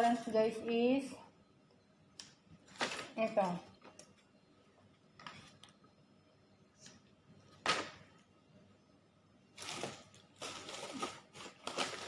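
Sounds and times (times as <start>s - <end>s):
food packaging rustling: 2.6s - 4.0s, 9.5s - 12.0s
food packaging scraping: 9.6s - 12.0s.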